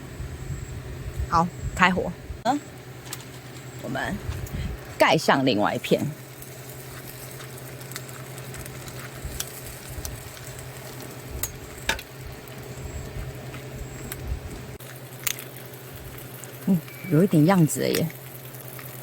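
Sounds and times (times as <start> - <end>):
food sizzling in a pan: 5.0 - 19.0.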